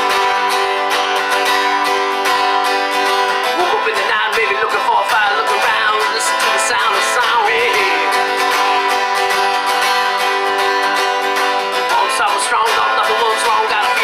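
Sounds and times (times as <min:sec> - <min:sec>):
strummed acoustic guitar music: 0:00.0 - 0:14.0.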